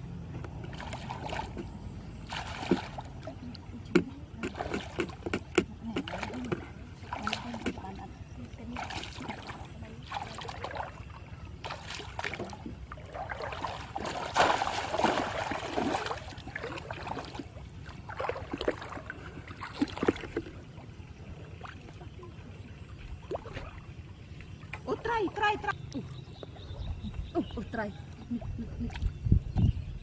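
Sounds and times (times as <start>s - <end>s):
water sloshing and splashing: 0.4s - 29.8s.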